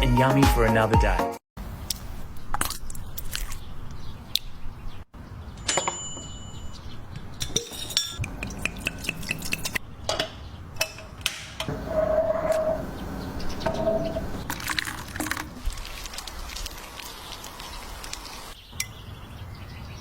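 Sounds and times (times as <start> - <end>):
ringing clink: 5.6 - 6.9
utensils clinking on dishes: 7.4 - 11.2.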